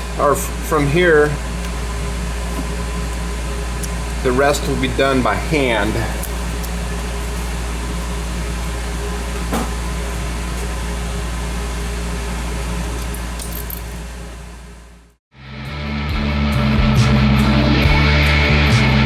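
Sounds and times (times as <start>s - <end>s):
low ventilation fan hum: 0.0s - 15.2s.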